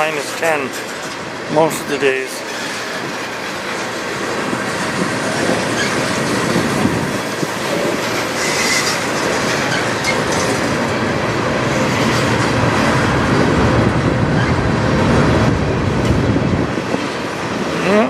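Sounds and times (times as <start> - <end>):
steel wheels rumbling on rail: 0.0 - 18.0
high wheel squeal: 5.4 - 10.7.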